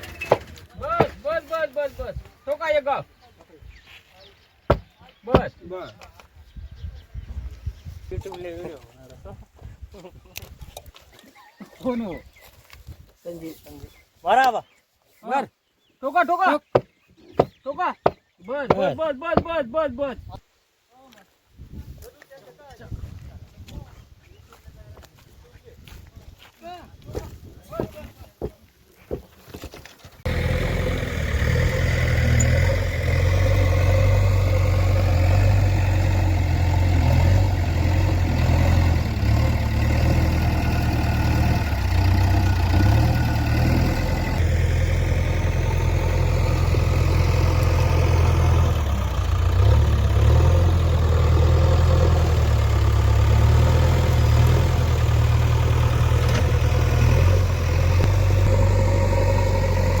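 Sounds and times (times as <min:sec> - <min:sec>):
diesel engine droning: 0:30.2 - 1:00.0.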